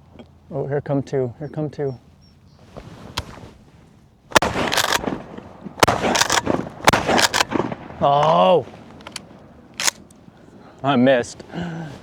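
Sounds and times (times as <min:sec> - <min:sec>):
shotgun shots: 0:04.3 - 0:10.1.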